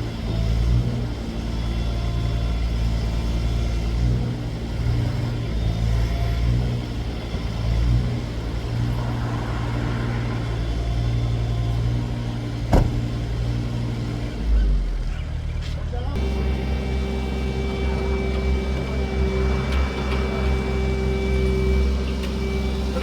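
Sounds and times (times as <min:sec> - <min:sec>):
heavy machine engine running: 0:00.0 - 0:23.0.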